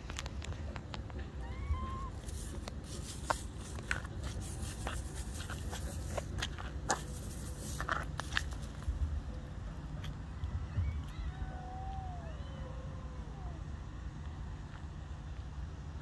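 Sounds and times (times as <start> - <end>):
low steady rumble: 0.0 - 16.0
kittens clicking and scraping toy: 2.1 - 9.0.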